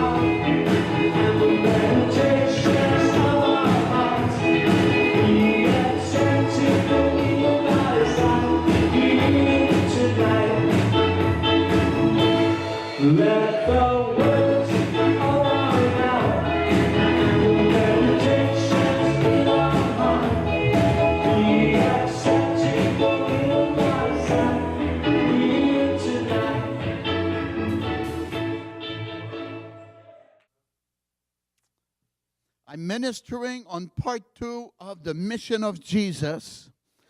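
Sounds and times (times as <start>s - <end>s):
gospel choir singing: 0.0s - 11.0s, 13.0s - 26.9s.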